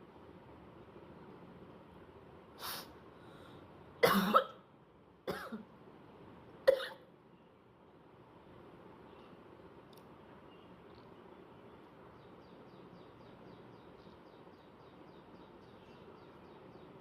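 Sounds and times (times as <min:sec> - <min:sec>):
person coughing and hawking: 0:04.0 - 0:04.6, 0:05.3 - 0:05.7, 0:06.7 - 0:07.0.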